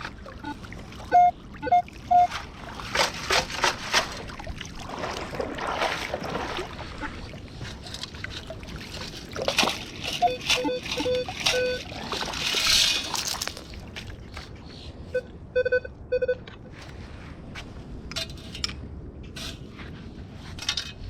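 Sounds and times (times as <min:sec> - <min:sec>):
water and wet sand sloshing: 0:00.0 - 0:15.2
metal detector beeps: 0:00.4 - 0:02.4, 0:10.2 - 0:11.9, 0:15.1 - 0:16.4.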